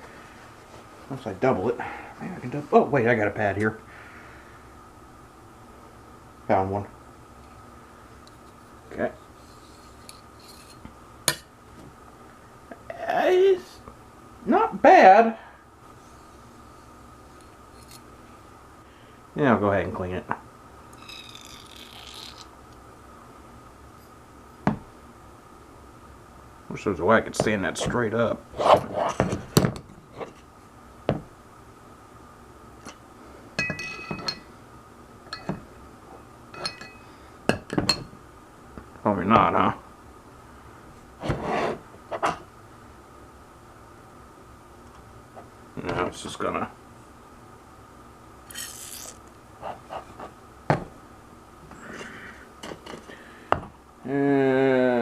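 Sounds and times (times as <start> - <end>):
metal parts clinking and knocking: 48.5 - 49.2.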